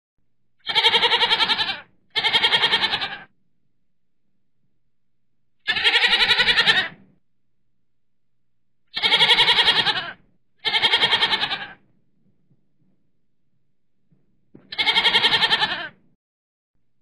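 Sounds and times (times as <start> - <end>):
goat bleating: 0.6 - 3.3, 5.7 - 7.0, 8.9 - 11.8, 14.7 - 16.0.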